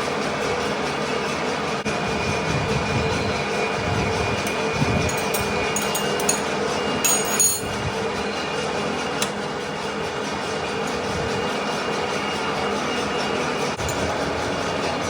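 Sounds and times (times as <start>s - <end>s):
lathe humming: 0.3s - 15.0s
sharp metallic clinks: 5.1s - 7.8s.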